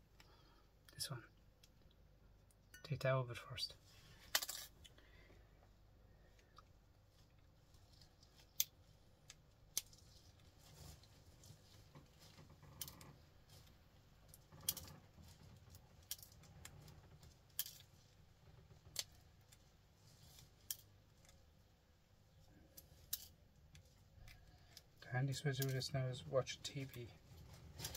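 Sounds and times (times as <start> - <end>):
handling rustle: 6.7 - 26.0, 26.6 - 27.9.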